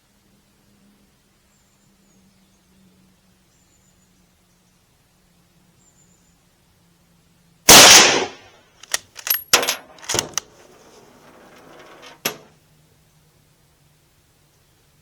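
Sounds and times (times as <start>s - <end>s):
rifle shot: 7.7s - 10.5s
rifle bolt metallic clicks: 7.7s - 10.8s.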